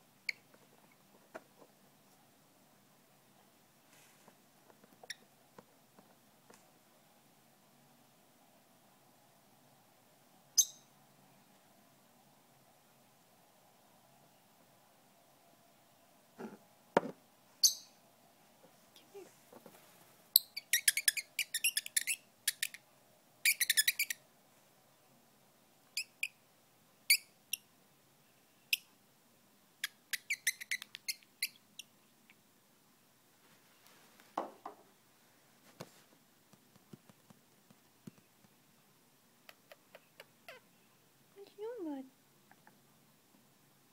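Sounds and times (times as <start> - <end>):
bird high chirp: 10.6 - 10.9, 17.6 - 18.0, 20.4 - 22.8, 23.4 - 24.2, 29.8 - 31.9.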